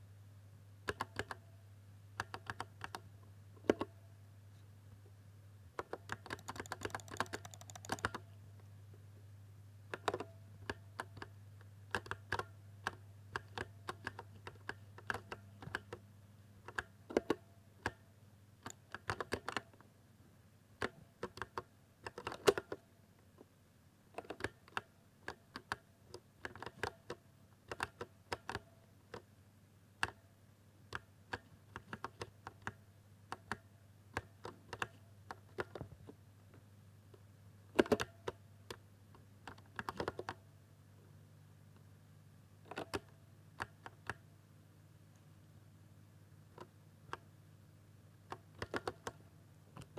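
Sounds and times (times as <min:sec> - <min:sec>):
keyboard typing: 0:05.8 - 0:08.3.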